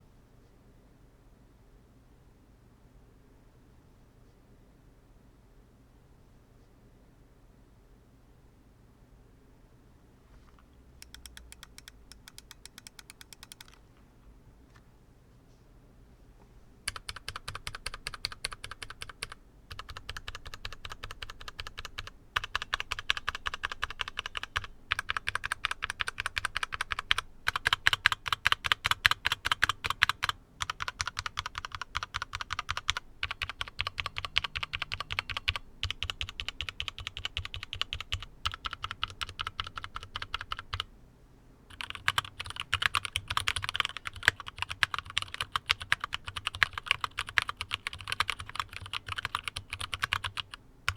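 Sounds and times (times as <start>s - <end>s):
mechanical keyboard typing: 11.0s - 13.8s, 16.9s - 40.9s, 41.7s - 50.9s.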